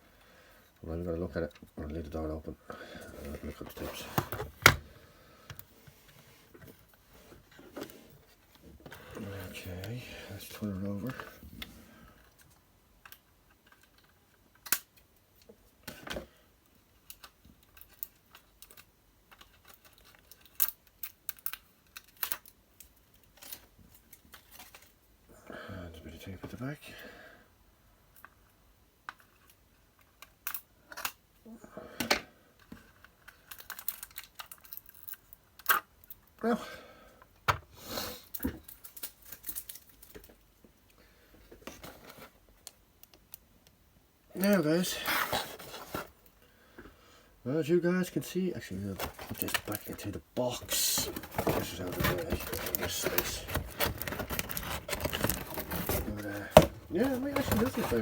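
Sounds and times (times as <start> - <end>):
model car and plastic packaging handled: 0.7 - 4.8, 12.2 - 25.2, 32.6 - 36.4, 38.4 - 40.8, 41.4 - 43.6, 44.4 - 46.4, 48.0 - 58.0
packaging rustle: 44.4 - 46.2, 48.7 - 58.0.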